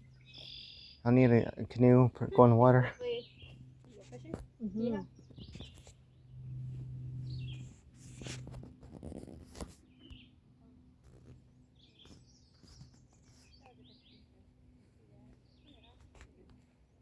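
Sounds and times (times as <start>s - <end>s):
birds chirping: 0.0s - 7.8s, 9.8s - 10.5s, 11.4s - 14.4s, 15.2s - 16.1s
low steady hum: 0.0s - 17.0s.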